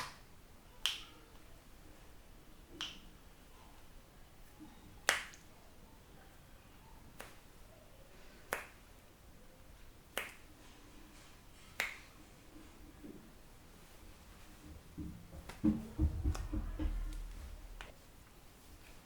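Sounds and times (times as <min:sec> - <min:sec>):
sharp massage snaps: 0:00.0 - 0:01.1, 0:05.0 - 0:05.5, 0:07.1 - 0:07.6, 0:08.5 - 0:09.0, 0:10.1 - 0:10.6, 0:11.8 - 0:12.2.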